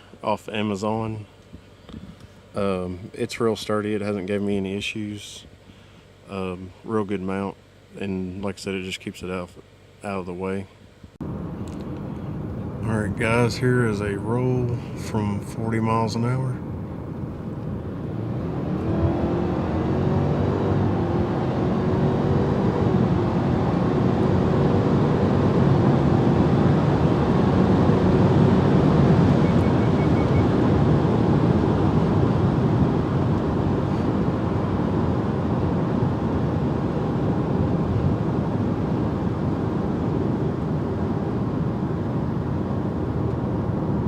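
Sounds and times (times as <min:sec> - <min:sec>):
road noise: 0:09.6 - 0:44.0
car engine accelerating hard: 0:16.2 - 0:44.0.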